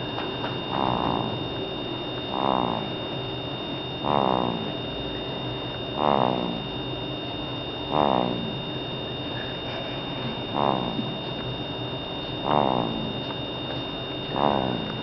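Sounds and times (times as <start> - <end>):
baby snoring: 10.5 - 11.2.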